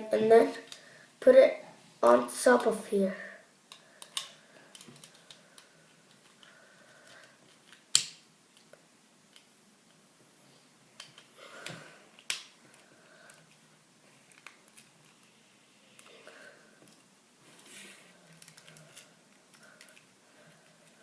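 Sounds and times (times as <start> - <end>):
plastic pieces snapping together: 3.7 - 5.4, 7.2 - 8.7, 11.0 - 12.6
plastic pieces clicking and tapping: 3.7 - 6.5.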